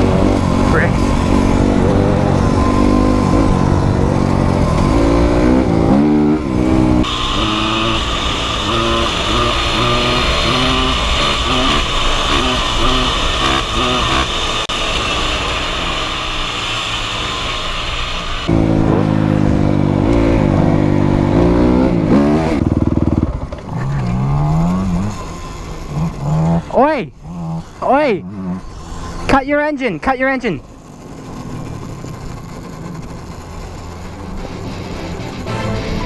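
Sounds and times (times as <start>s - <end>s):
dirt bike engine revving: 0.0s - 17.4s, 18.4s - 36.0s
strong hiss: 7.0s - 18.6s.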